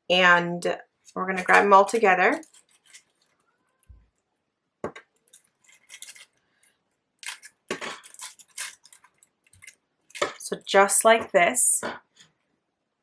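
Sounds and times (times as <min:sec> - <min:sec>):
paper petals rustling: 0:02.3 - 0:03.4, 0:05.2 - 0:06.4.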